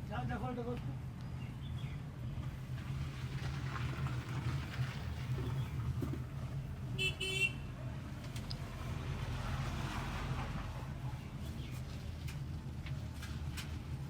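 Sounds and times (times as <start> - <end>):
vehicle horn toots: 7.0 - 7.7.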